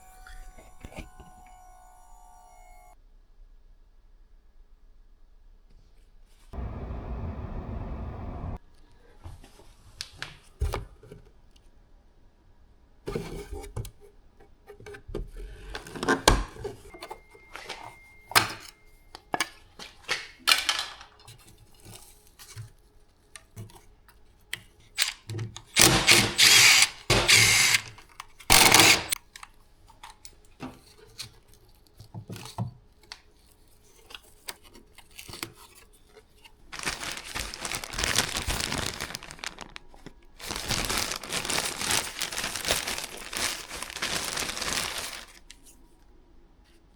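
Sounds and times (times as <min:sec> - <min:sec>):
tool clicks and knocks: 0:25.0 - 0:29.2.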